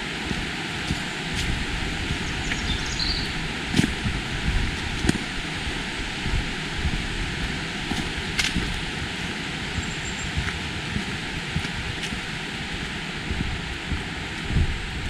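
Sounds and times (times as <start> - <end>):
rushing outdoor hiss: 0.0 - 15.0
sharp crunches and snaps: 0.3 - 1.6, 3.7 - 4.1, 7.9 - 8.9.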